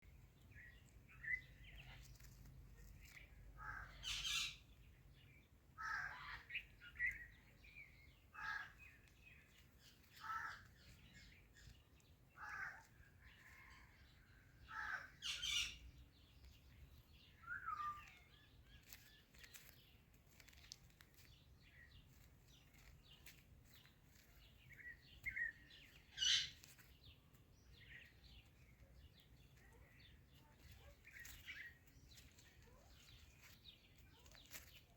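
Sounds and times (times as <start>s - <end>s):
parakeet squawking and chirping: 3.6s - 4.6s, 26.1s - 26.6s.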